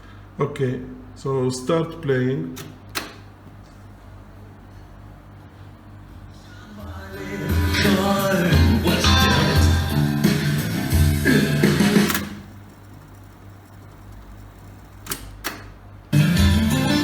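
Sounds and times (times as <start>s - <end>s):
sharp mechanical clicks: 2.6s - 3.3s, 11.8s - 15.8s
guitar song from speakers: 7.5s - 12.1s.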